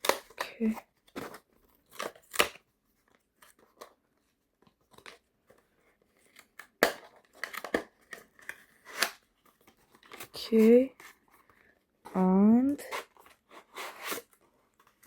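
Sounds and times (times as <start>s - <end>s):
packaging crackling and scraping: 4.6s - 15.0s.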